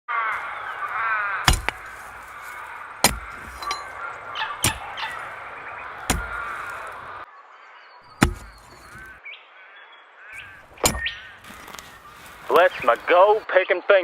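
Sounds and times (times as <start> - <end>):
birds chirping: 0.3 - 13.5
metal pick striking rock: 0.4 - 7.0, 8.2 - 9.2, 10.4 - 13.2.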